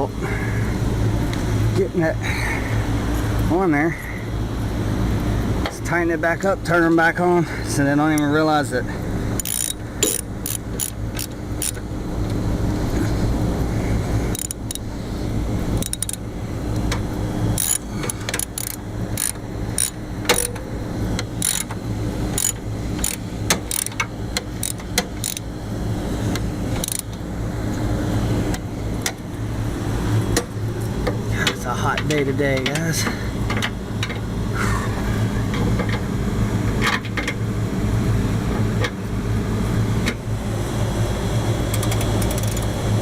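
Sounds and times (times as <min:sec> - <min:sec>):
machinery hum: 0:00.0 - 0:43.0.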